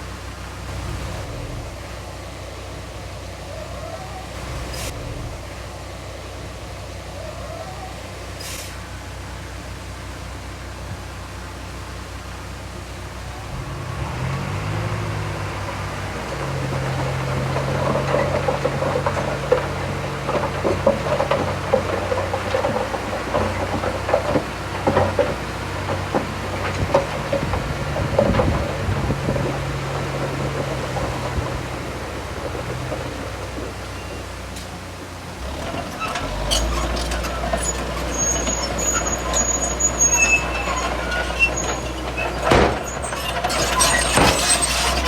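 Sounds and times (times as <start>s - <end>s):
diesel engine revving: 0.6s - 2.1s, 4.3s - 5.8s, 13.3s - 33.9s, 35.2s - 45.0s
clanks and rattles: 15.7s - 34.7s, 35.4s - 45.0s.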